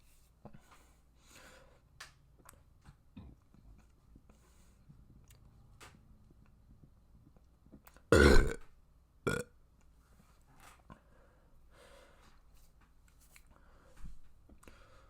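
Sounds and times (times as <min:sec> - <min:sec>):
person burping: 0:08.1 - 0:08.6, 0:09.3 - 0:09.5.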